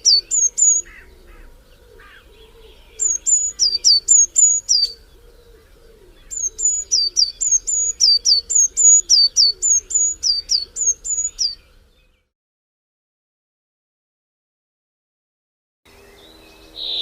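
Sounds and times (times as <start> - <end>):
songbird whistling: 0.0 - 1.1, 2.1 - 5.0, 6.2 - 11.6, 16.0 - 17.0.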